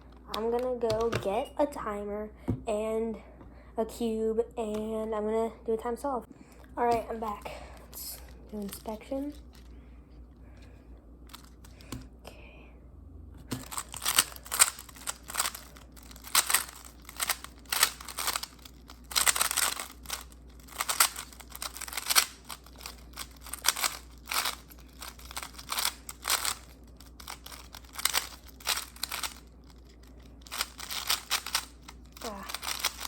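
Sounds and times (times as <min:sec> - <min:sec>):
plastic puzzle cube clicking: 0:13.6 - 0:29.5, 0:30.4 - 0:33.0.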